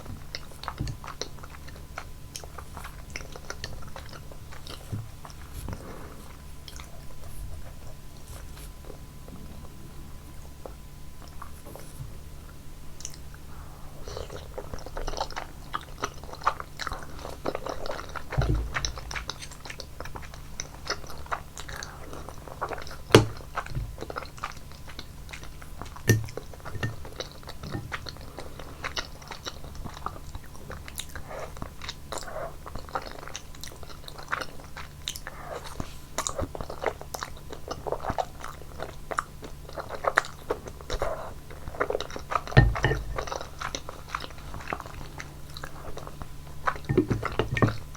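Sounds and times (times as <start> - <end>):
chewing noodles: 0.0 - 47.9.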